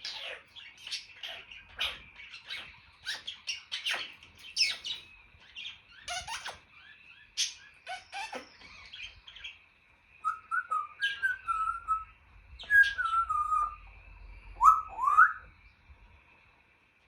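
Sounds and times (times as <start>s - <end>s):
parrot whistling: 10.2s - 13.9s, 14.5s - 15.5s.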